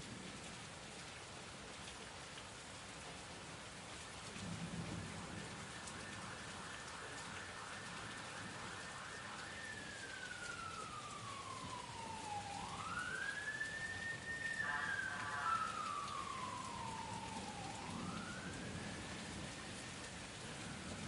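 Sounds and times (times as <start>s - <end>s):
steady rain falling: 0.0s - 21.0s
wailing emergency siren: 4.2s - 21.0s.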